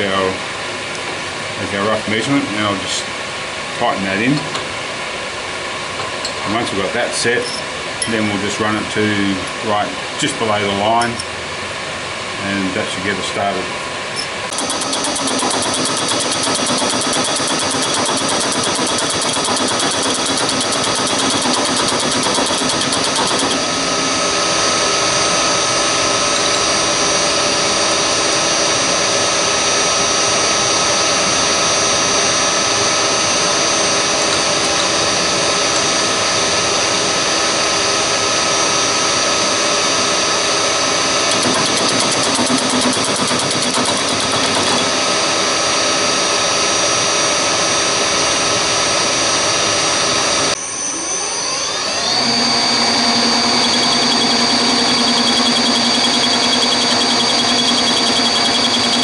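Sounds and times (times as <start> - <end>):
milling machine cutting metal: 14.5 - 59.0.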